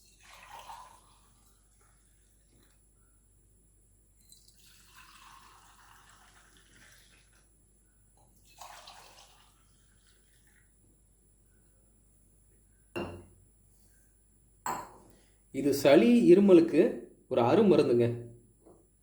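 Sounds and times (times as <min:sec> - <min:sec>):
milk being poured: 0:00.0 - 0:03.2, 0:04.1 - 0:11.2.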